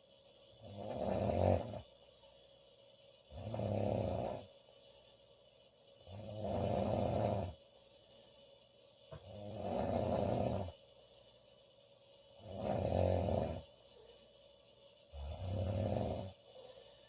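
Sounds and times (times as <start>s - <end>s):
woman snoring: 0.6s - 1.8s, 3.3s - 4.5s, 6.0s - 7.6s, 9.2s - 10.8s, 12.4s - 13.7s, 15.1s - 16.8s.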